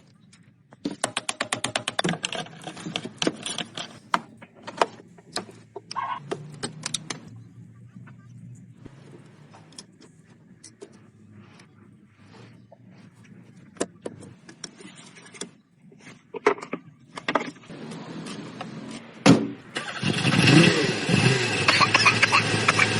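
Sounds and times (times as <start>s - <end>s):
diesel engine starting and running: 2.8s - 14.7s, 17.0s - 22.9s.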